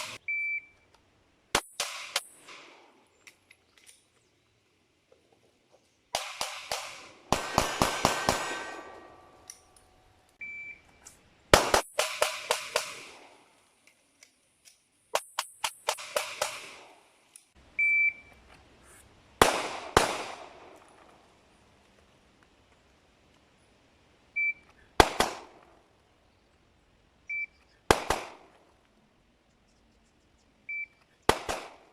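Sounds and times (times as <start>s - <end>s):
short steady beep: 0.2s - 0.9s, 10.4s - 11.0s, 17.8s - 18.4s, 24.4s - 24.7s, 27.3s - 27.6s, 30.6s - 31.1s
airsoft gun shots with ringing: 6.2s - 9.3s.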